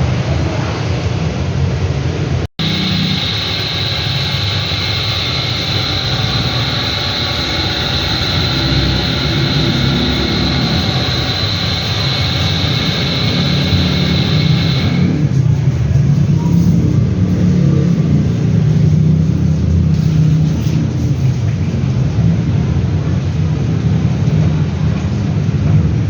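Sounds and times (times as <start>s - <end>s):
washing machine hum: 2.6s - 22.0s
high whine: 2.6s - 22.2s.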